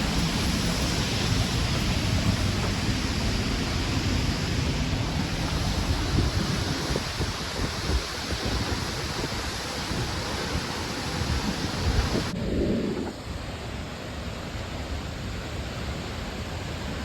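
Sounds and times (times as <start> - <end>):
waterfall rushing: 0.0 - 12.4
wind buffeting microphone: 0.0 - 13.6.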